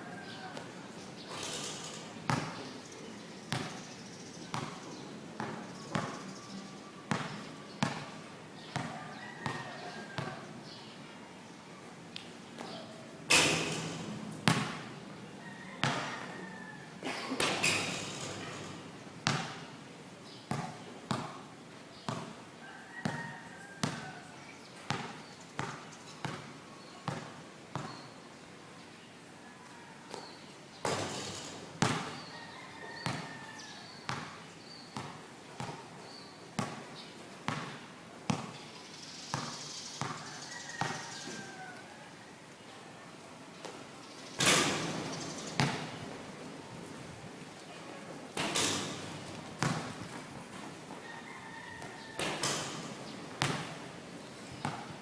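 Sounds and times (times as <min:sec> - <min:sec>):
basketball bouncing on a court: 0:01.3 - 0:02.6, 0:03.5 - 0:03.9, 0:04.5 - 0:06.3, 0:07.1 - 0:10.4, 0:13.5 - 0:14.9, 0:15.8 - 0:16.3, 0:19.2 - 0:19.7, 0:20.5 - 0:21.5, 0:23.0 - 0:24.2, 0:24.9 - 0:28.1, 0:30.8 - 0:32.3, 0:33.0 - 0:33.3, 0:34.1 - 0:35.9, 0:36.6 - 0:36.9, 0:37.5 - 0:38.6, 0:39.3 - 0:40.2, 0:40.8 - 0:41.1, 0:44.4 - 0:46.0, 0:48.4 - 0:50.7, 0:51.8 - 0:53.9, 0:54.5 - 0:55.0.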